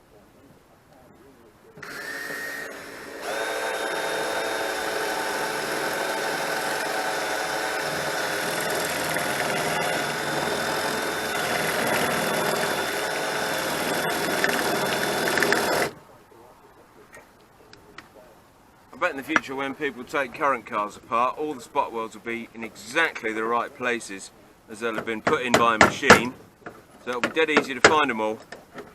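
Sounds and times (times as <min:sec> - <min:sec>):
drill clicks: 0:01.8 - 0:16.0
electric drill whining: 0:01.8 - 0:16.0.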